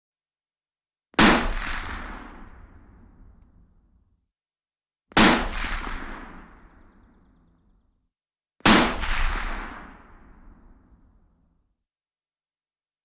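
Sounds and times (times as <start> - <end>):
rifle shots with echo: 1.2 - 3.2, 5.2 - 6.8.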